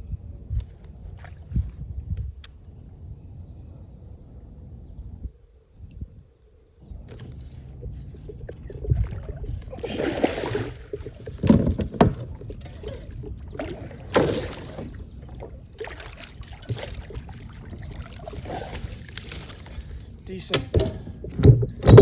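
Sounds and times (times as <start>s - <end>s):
rustling and scuffing: 18.2s - 20.2s.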